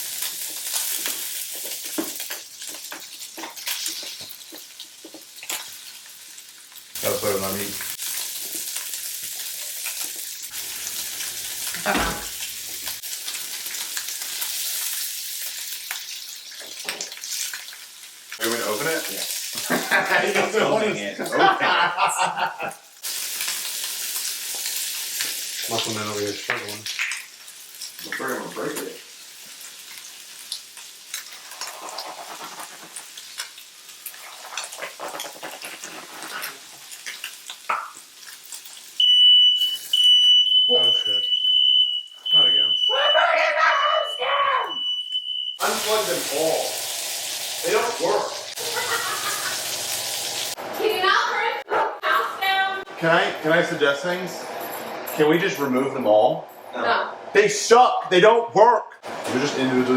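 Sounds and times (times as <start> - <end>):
meat sizzling and crackling: 0.0 - 20.6, 22.1 - 40.6, 45.6 - 51.5
crackles and pops: 26.5 - 28.2, 30.5 - 38.8.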